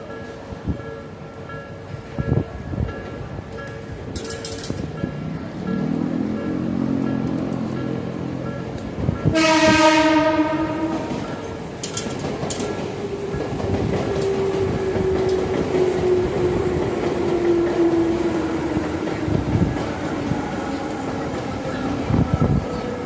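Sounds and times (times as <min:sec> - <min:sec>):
electric train whine: 0:00.0 - 0:23.0
train wheels clacking over rail joints: 0:02.9 - 0:08.0, 0:08.7 - 0:17.9
train horn: 0:09.2 - 0:11.6.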